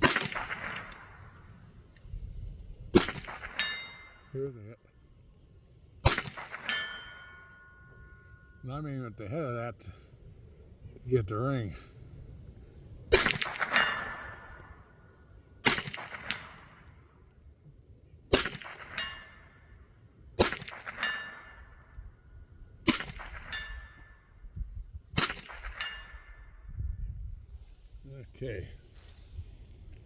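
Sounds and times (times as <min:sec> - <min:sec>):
rifle shots: 0:00.0 - 0:01.6, 0:03.0 - 0:04.2, 0:06.0 - 0:07.3, 0:13.1 - 0:15.0, 0:15.6 - 0:17.2, 0:18.3 - 0:19.8, 0:20.4 - 0:22.0, 0:22.8 - 0:24.1, 0:25.2 - 0:26.4
steel target clanging: 0:03.0 - 0:04.5, 0:06.1 - 0:09.0, 0:13.1 - 0:15.0, 0:18.4 - 0:19.8, 0:20.4 - 0:22.0, 0:22.9 - 0:24.3, 0:25.2 - 0:26.6.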